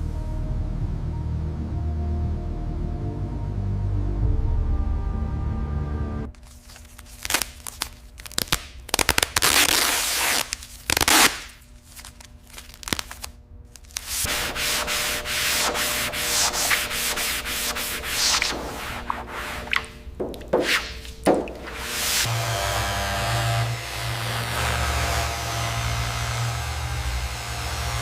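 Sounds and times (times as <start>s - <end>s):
sanding scratchy strokes: 14.1s - 22.4s.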